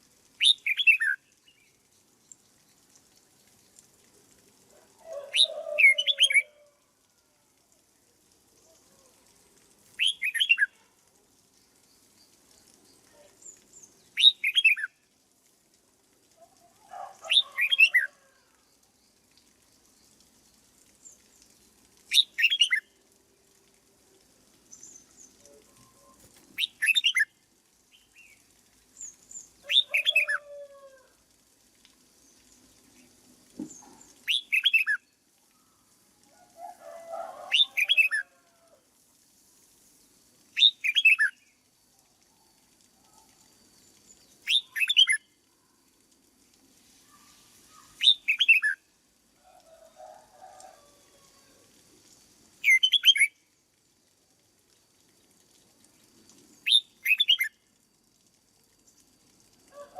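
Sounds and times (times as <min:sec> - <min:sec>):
bird song phrases: 0:05.1 - 0:06.6, 0:29.0 - 0:30.6, 0:43.8 - 0:45.2, 0:52.6 - 0:53.3.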